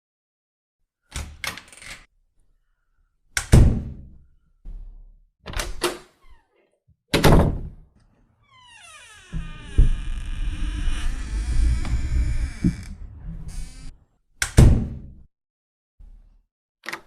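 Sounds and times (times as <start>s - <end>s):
heavy door closing thuds: 7.2s - 7.8s, 8.7s - 13.9s.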